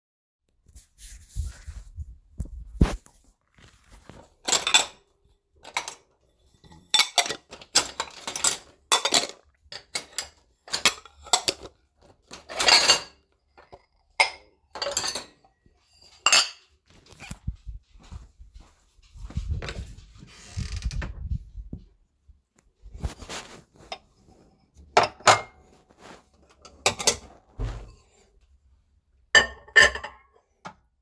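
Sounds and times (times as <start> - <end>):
ceramic dishes clinking and clattering: 4.4 - 5.0, 5.6 - 11.7, 12.3 - 16.8, 24.9 - 25.7, 26.6 - 28.1, 29.4 - 30.5.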